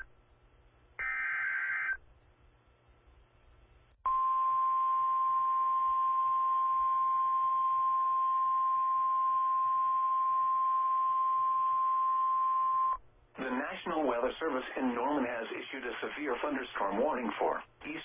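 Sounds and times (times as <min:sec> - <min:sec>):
steady high alarm tone: 0:01.0 - 0:02.0, 0:04.1 - 0:13.0
radio hiss: 0:13.4 - 0:18.0.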